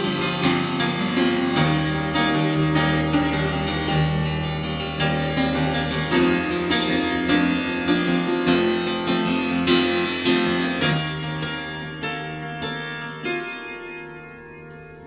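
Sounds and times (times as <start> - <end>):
slow piano music: 0.0 - 15.0.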